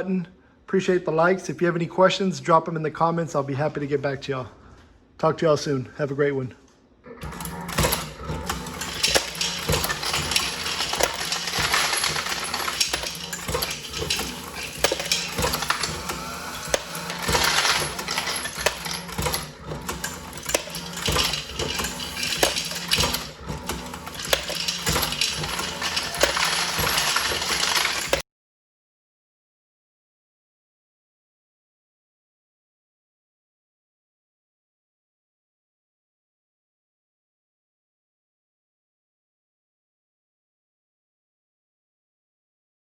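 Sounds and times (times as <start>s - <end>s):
metallic clinking of brass cases: 7.5s - 28.2s.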